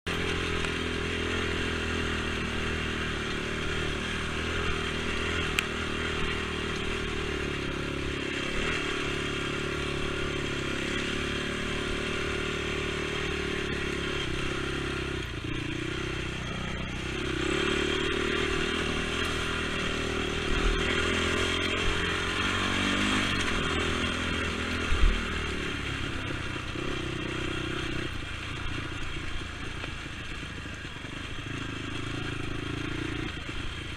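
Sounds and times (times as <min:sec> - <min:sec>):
atv engine revving: 0:00.1 - 0:33.9.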